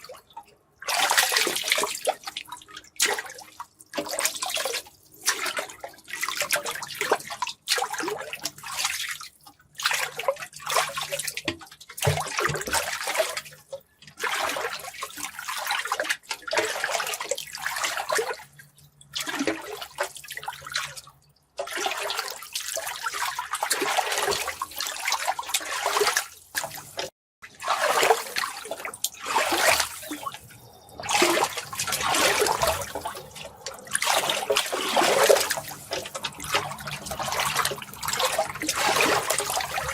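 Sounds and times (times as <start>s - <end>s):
water running and splashing: 21.6s - 39.9s.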